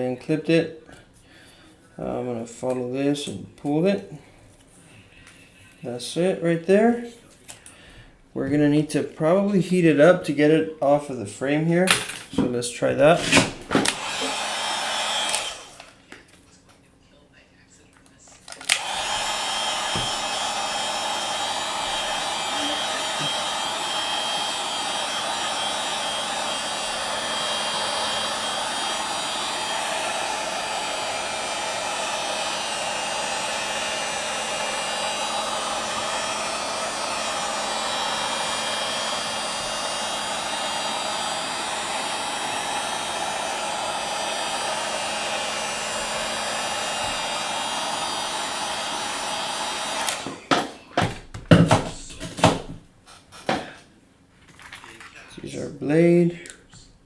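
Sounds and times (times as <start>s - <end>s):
hot-air blower running: 13.1s - 16.2s, 18.5s - 53.8s.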